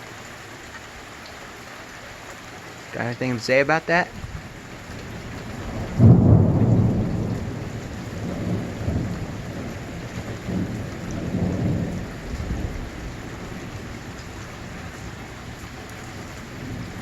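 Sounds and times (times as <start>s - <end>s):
steady rain: 0.0s - 17.0s
thunder rumbling: 4.1s - 17.0s.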